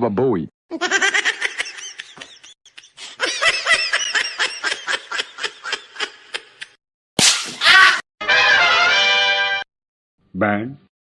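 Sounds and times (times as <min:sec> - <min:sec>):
sharp hit: 0:07.2 - 0:08.0.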